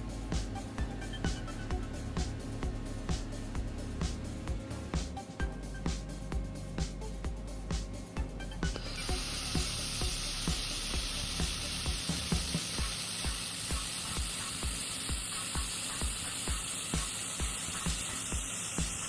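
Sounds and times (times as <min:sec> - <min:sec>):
regular low beat: 0:00.0 - 0:19.0
welding crackling sizzle: 0:08.9 - 0:19.0.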